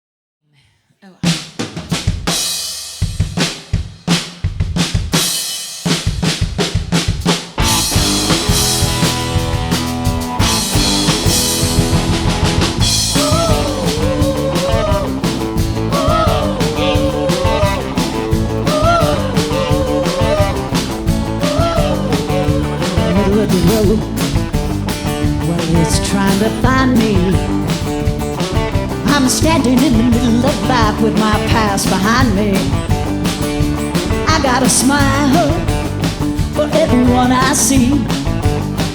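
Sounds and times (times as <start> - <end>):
rock band playing: 1.7 - 38.9
bending lead melody: 7.7 - 25.6.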